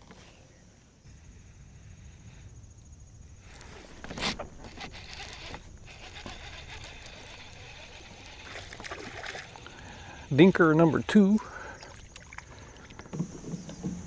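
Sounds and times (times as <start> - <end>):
fishing tackle scraping and rustling: 3.4 - 14.0.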